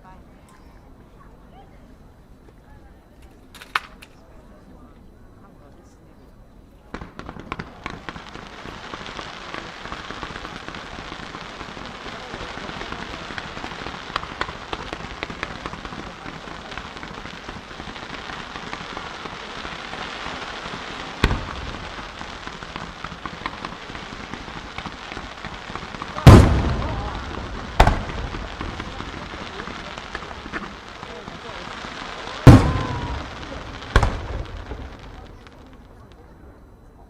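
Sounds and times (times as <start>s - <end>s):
fireworks crackling: 3.2s - 4.4s, 6.7s - 36.6s
firework bang: 11.6s - 35.8s.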